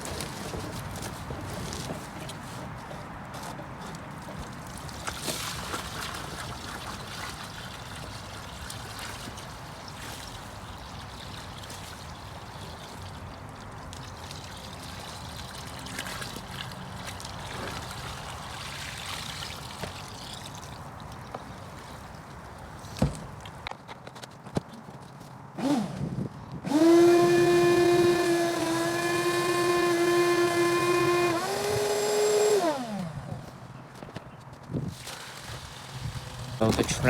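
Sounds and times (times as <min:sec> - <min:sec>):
shop vacuum running: 0:26.7 - 0:33.2.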